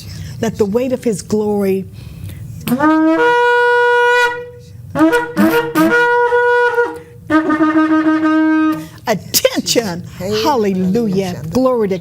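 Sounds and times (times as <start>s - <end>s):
ram's horn blasts: 2.6s - 9.0s.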